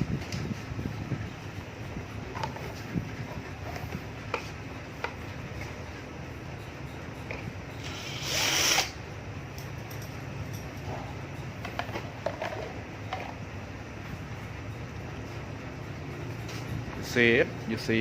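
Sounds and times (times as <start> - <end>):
small power tool burst: 7.8 - 9.0.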